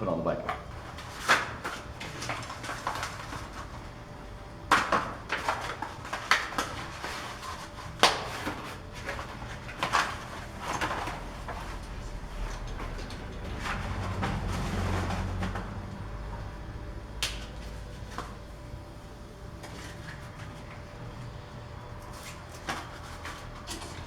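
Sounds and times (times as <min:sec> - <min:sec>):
cardboard and plastic wrap rustling: 0:00.7 - 0:24.0
packaging rustling and crinkling: 0:00.9 - 0:04.0.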